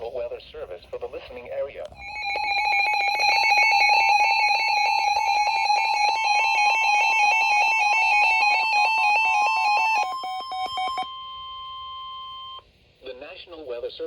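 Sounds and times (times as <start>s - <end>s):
two-tone electronic alarm warble: 2.0s - 12.6s
steady alarm tone: 2.0s - 12.7s.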